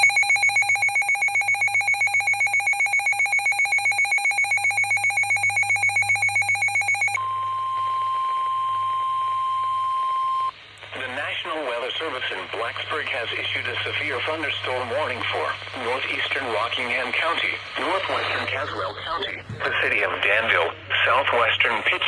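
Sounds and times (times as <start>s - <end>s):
rapidly pulsing electronic alert tone: 0.0s - 7.2s
steady single-pitch alarm tone: 0.0s - 10.5s.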